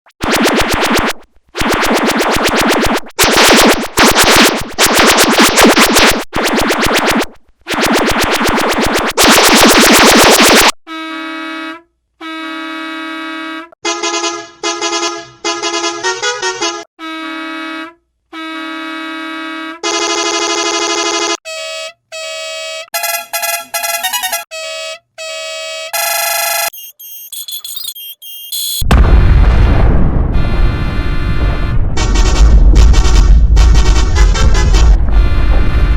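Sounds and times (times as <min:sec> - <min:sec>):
distorted buzzy air horn blasts: 0:10.5 - 0:26.8, 0:30.4 - 0:32.9, 0:33.5 - 0:35.9
pitched horn tones: 0:10.9 - 0:28.9, 0:30.4 - 0:32.5, 0:33.6 - 0:35.9.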